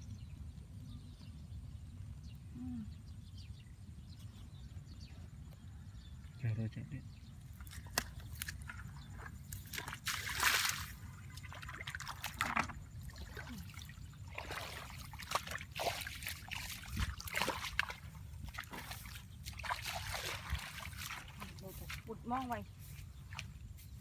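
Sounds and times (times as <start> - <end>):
water sloshing and splashing: 7.5 - 24.0.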